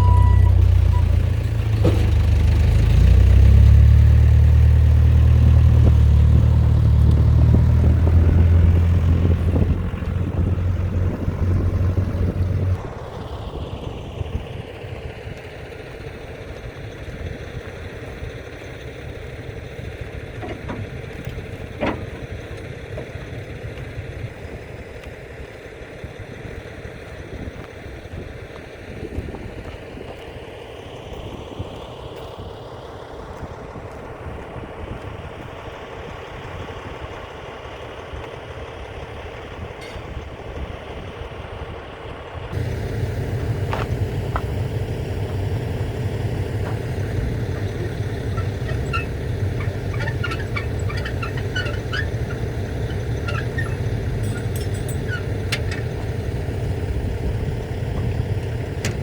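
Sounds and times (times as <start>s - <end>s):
engine idling: 0.0s - 27.4s, 34.8s - 59.0s
sharp engine knocks: 0.6s - 2.8s, 20.0s - 23.9s, 42.6s - 59.0s.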